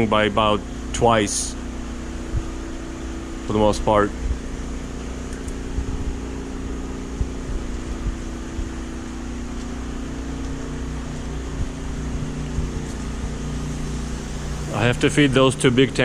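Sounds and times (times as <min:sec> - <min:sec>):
aquarium water pumps: 0:00.0 - 0:16.0
generators humming: 0:00.0 - 0:16.0.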